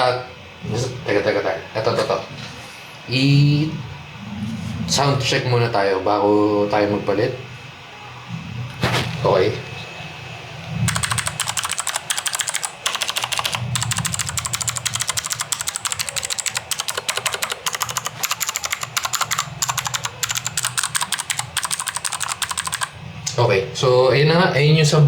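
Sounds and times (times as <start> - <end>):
mechanical keyboard typing: 10.9 - 23.0.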